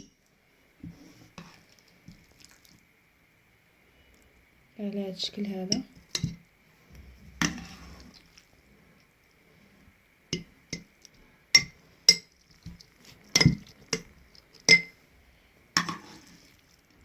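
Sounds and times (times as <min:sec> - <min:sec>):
spoon clinking against glass jar: 0:13.4 - 0:15.0.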